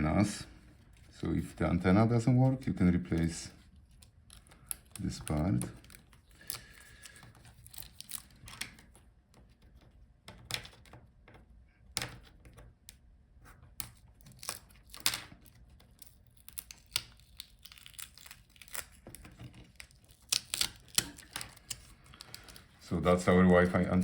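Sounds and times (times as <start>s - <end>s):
tape tearing and crinkling: 3.7s - 8.9s, 13.8s - 24.0s.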